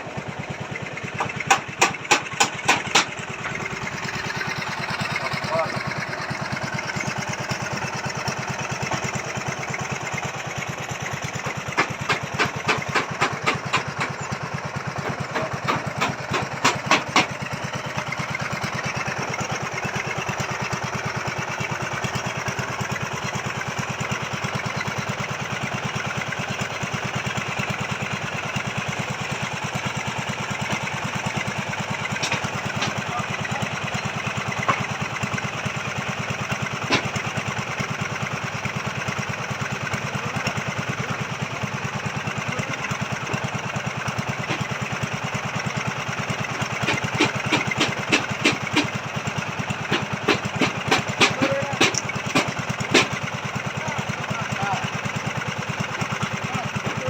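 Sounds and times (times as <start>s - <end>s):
auger engine running: 0.0s - 57.0s
sharp knocks: 1.2s - 3.2s, 11.7s - 14.2s, 15.0s - 17.4s, 46.8s - 49.0s, 49.9s - 53.2s.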